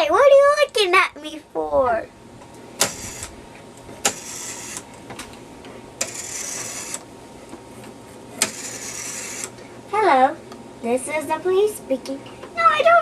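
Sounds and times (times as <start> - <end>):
rotary telephone dial whirring: 2.8 - 3.4, 4.0 - 5.0, 6.0 - 7.1, 8.4 - 9.6.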